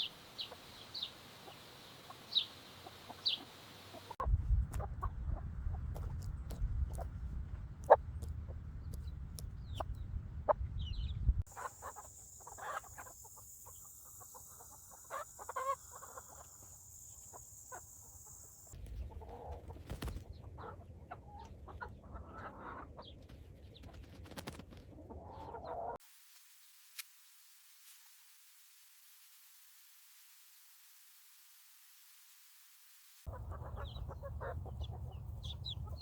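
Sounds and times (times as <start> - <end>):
chickens clucking: 0.0 - 7.1, 11.5 - 23.2, 33.3 - 36.0
wind or handling noise: 4.2 - 11.5.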